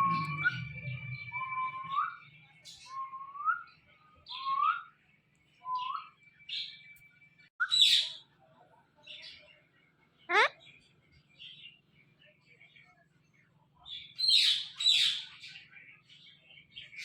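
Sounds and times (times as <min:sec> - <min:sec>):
parrot harsh squawk: 0:10.3 - 0:10.5
parrot chirps: 0:10.3 - 0:10.6.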